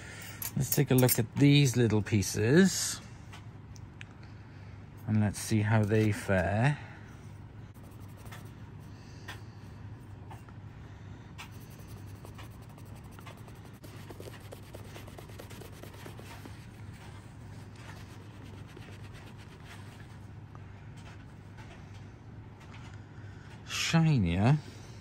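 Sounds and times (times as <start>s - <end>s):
low hum: 6.8s - 23.4s
scratchy rubbing strokes: 11.4s - 20.3s.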